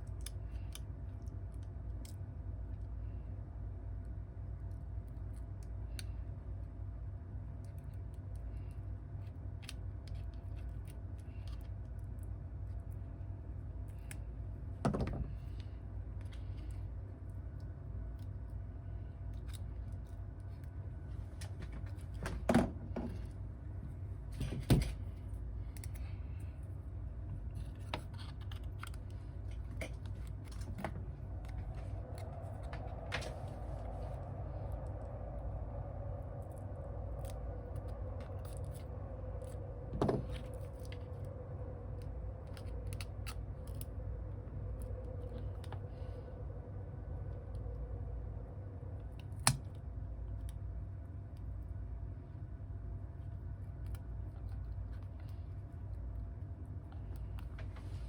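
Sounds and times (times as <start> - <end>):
steady low hum: 0.0 - 58.0.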